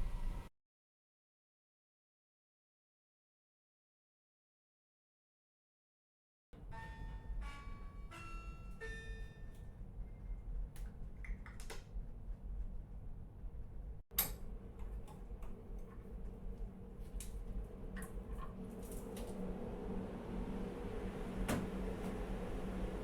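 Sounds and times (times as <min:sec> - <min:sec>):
low machinery hum: 0:00.0 - 0:00.5, 0:06.6 - 0:23.0.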